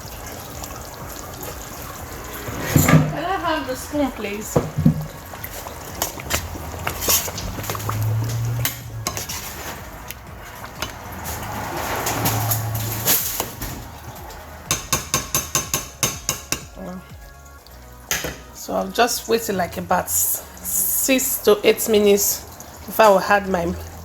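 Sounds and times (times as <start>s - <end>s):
spoon scraping a cooking pot: 4.8s - 11.6s.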